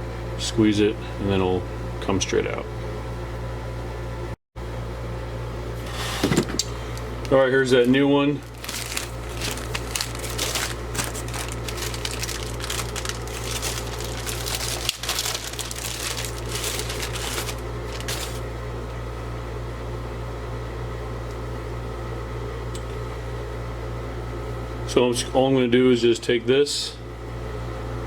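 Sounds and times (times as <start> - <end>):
steady low hum: 0.0 - 28.0
plastic packaging crinkling: 7.8 - 18.5.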